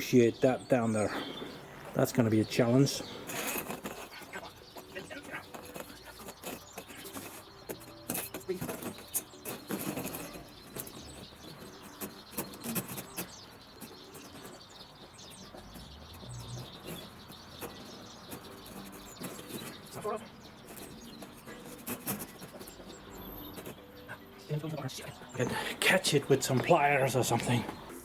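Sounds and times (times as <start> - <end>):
birds chirping: 0.0 - 28.0.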